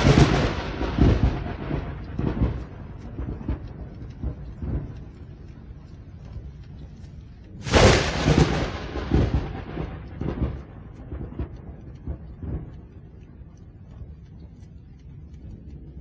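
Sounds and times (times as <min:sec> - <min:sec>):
thunderclap with rolling rumbles: 0:00.0 - 0:16.0.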